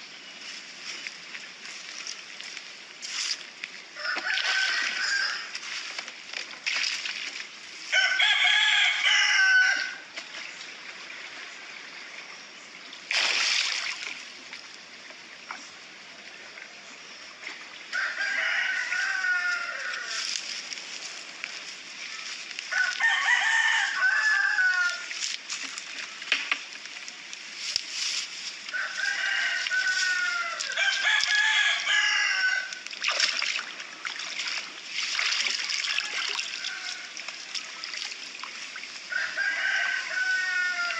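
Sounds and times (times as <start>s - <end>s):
rooster crowing: 4.0s - 5.6s, 7.9s - 10.1s, 17.9s - 20.3s, 22.7s - 25.1s, 28.7s - 32.8s, 35.8s - 37.3s, 39.1s - 40.9s.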